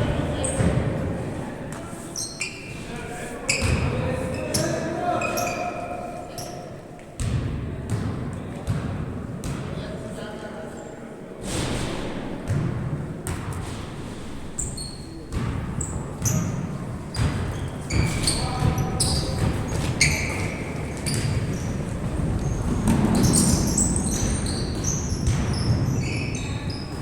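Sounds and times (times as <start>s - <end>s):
sneaker squeaks: 1.7s - 6.7s, 14.6s - 27.0s.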